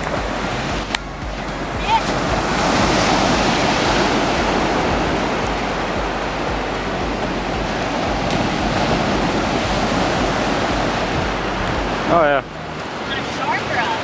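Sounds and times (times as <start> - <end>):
ocean surf breaking: 0.0 - 14.0
wind buffeting microphone: 0.0 - 14.0.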